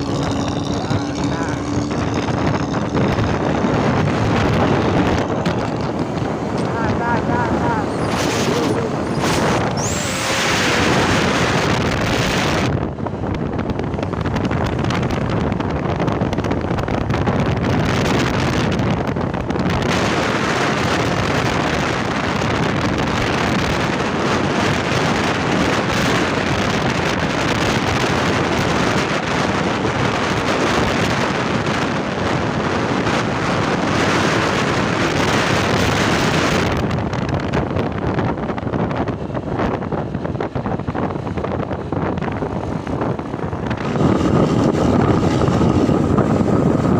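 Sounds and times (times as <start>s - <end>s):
vehicle running: 0.0s - 46.9s
wind buffeting microphone: 0.0s - 46.9s.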